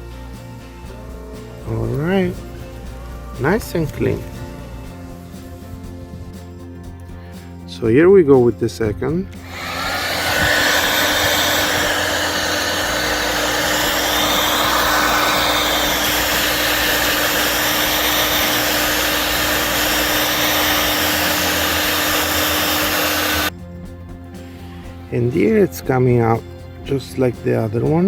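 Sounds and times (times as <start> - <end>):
heat gun blowing air: 9.4 - 23.5.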